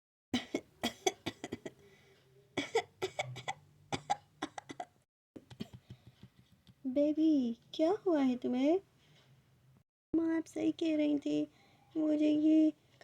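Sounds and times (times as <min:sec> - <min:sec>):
person coughing: 0:00.4 - 0:01.8, 0:02.6 - 0:04.9.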